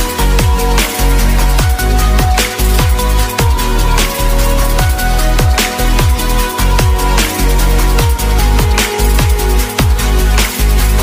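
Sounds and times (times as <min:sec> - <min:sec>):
crisp high percussion beat: 0:00.0 - 0:11.0
deep sustained bass: 0:00.0 - 0:11.0
electronic music: 0:00.0 - 0:11.0
booming kick drums: 0:00.2 - 0:00.7, 0:08.0 - 0:10.4.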